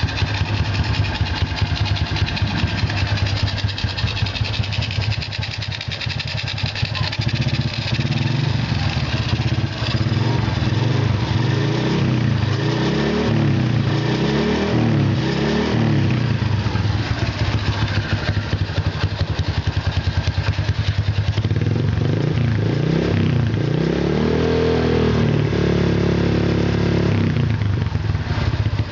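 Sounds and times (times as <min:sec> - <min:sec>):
motorcycle engine idling: 0:00.0 - 0:12.6, 0:16.0 - 0:22.3, 0:27.5 - 0:28.9
motorcycle engine revving: 0:00.0 - 0:28.9.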